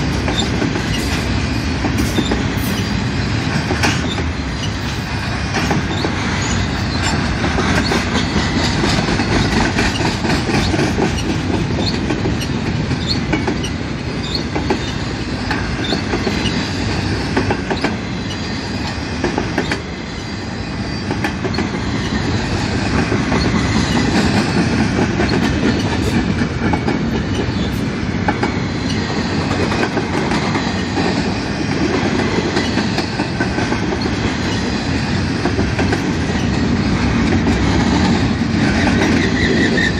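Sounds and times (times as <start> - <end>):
train rumble: 0.0 - 39.9
train wheels clicking over rail joints: 0.0 - 39.9
high wheel squeals: 5.8 - 7.2, 15.8 - 16.6, 38.6 - 39.9.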